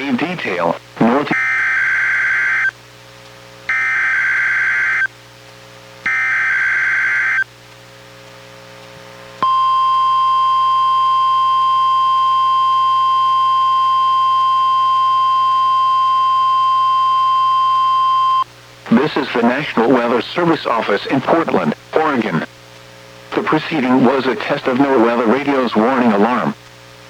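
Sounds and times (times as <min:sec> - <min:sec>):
steady alarm tone: 0:06.1 - 0:07.4, 0:09.4 - 0:18.4.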